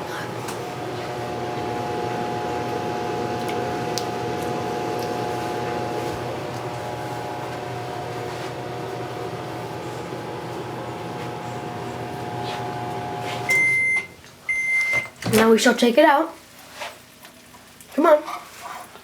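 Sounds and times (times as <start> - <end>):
microwave oven humming: 0.0 - 15.1.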